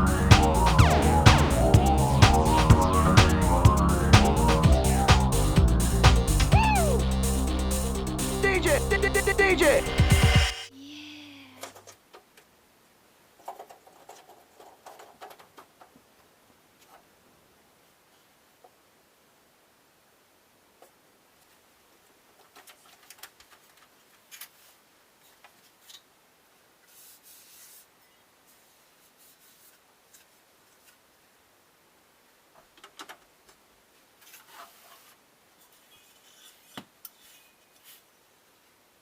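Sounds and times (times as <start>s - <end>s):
rubbing and scraping by hand: 26.8s - 31.0s, 34.2s - 38.1s.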